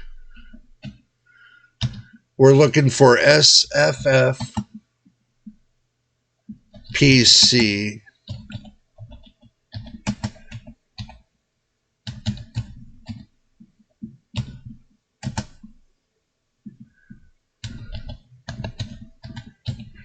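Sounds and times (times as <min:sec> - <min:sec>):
typing on computer keyboard: 0:00.3 - 0:01.0, 0:01.8 - 0:02.2, 0:04.4 - 0:04.9, 0:08.2 - 0:11.3, 0:12.0 - 0:13.4, 0:14.0 - 0:15.8, 0:16.7 - 0:20.0.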